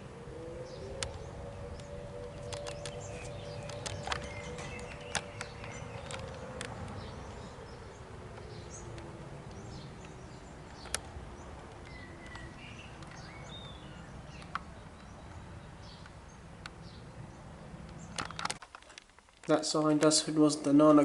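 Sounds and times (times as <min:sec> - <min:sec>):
distant air raid siren winding down: 0:00.0 - 0:18.5
birds chirping: 0:00.0 - 0:21.0
sharp clicks: 0:01.8 - 0:07.5, 0:08.3 - 0:15.2, 0:17.8 - 0:20.1.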